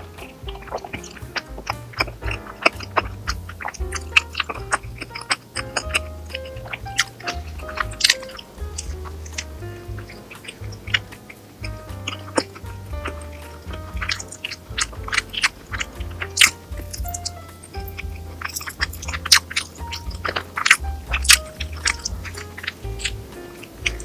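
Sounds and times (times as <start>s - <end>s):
background music with bass line: 0.0s - 24.0s
close chewing and eating: 0.0s - 24.0s.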